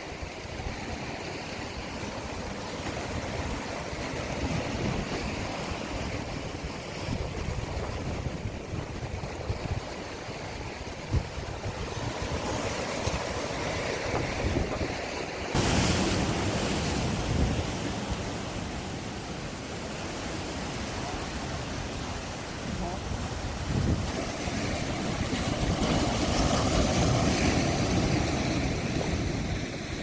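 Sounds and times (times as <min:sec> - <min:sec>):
sea surf on shore: 0:00.0 - 0:30.0
wind buffeting microphone: 0:03.1 - 0:19.4, 0:22.8 - 0:30.0.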